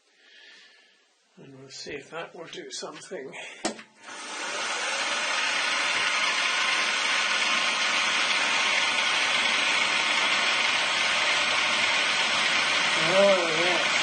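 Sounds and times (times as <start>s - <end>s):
milling machine drilling steel: 4.1s - 14.0s.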